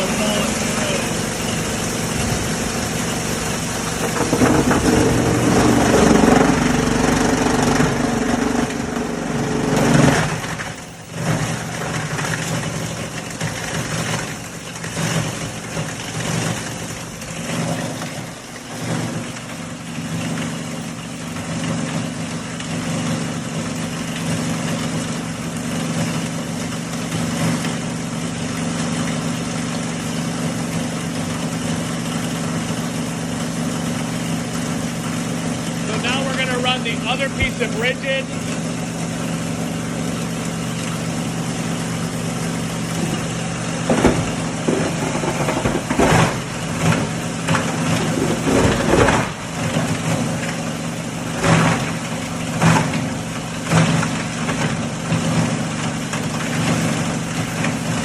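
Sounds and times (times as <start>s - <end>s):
rotor humming: 0.0s - 12.0s, 32.0s - 52.2s
granulator chopping plastic: 42.9s - 50.6s, 51.3s - 58.0s.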